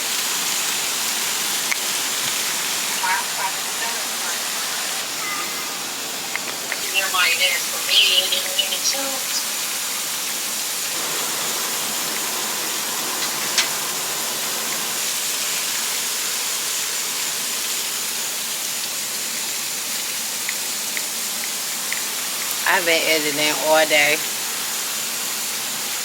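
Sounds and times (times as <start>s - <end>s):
river rapids roaring: 2.5s - 9.0s.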